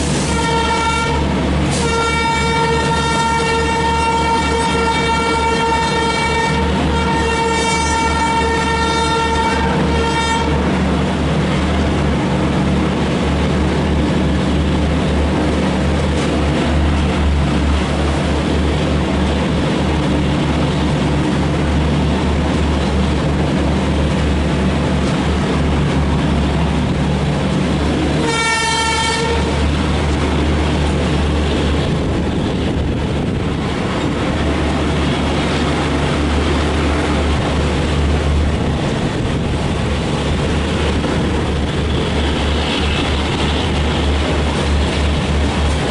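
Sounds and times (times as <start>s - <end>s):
train horn blast: 0.0s - 10.8s, 28.1s - 29.8s
train wheels rumbling on rails: 0.0s - 45.9s.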